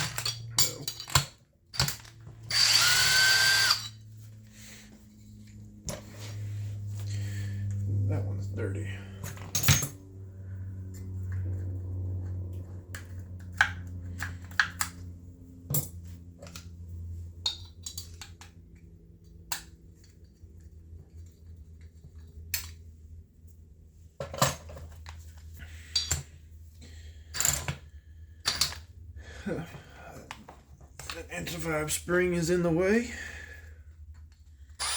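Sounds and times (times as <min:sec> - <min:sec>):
metal parts clinking on workbench: 0:00.0 - 0:02.7, 0:09.2 - 0:10.0
steady low hum: 0:00.0 - 0:34.9.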